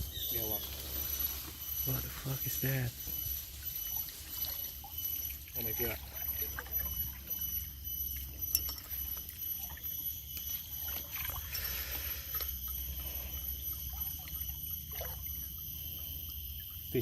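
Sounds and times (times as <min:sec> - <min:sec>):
water lapping and splashing: 0:03.1 - 0:16.1.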